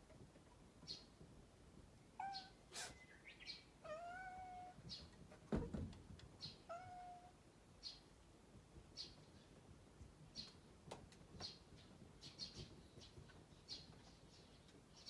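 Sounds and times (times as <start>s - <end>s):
bird chirping: 2.0s - 3.8s
cat meowing: 2.2s - 3.0s, 3.8s - 4.8s, 6.7s - 7.4s.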